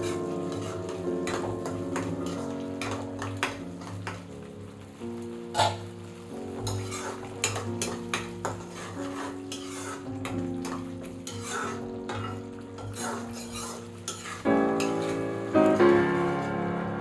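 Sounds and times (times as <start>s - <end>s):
metal utensils scraping a pot: 0.0s - 4.0s, 5.5s - 5.8s, 6.6s - 15.8s
soft background music: 0.0s - 17.0s.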